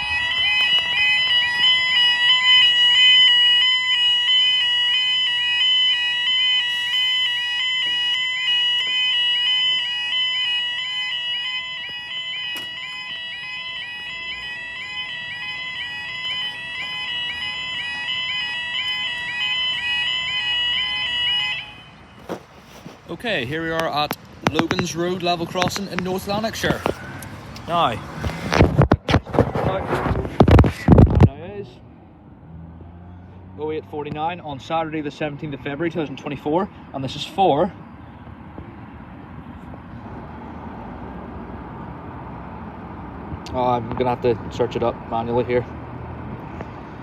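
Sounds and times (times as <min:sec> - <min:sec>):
level crossing alarm warbling: 0:00.0 - 0:22.0.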